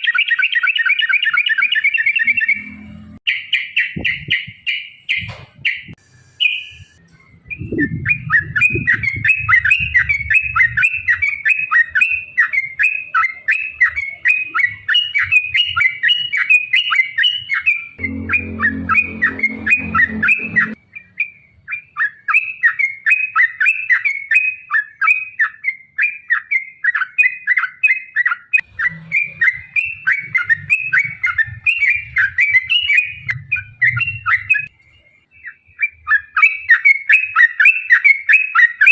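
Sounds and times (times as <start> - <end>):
birds singing chattering song: 0.0 - 38.9
low rumble: 18.0 - 20.8.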